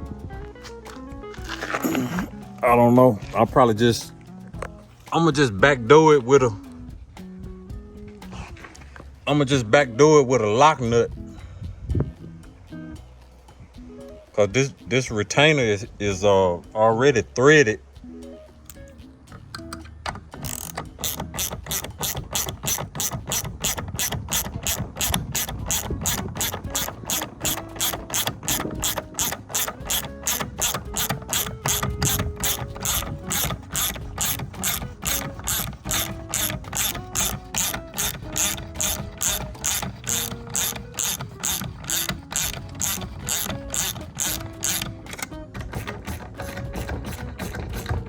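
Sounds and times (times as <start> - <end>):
ratchet wrench clicking: 19.5 - 48.0.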